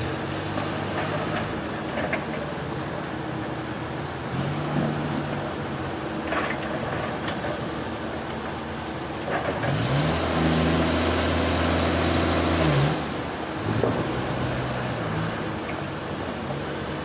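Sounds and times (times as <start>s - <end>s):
sawmill machinery running: 16.3s - 17.0s.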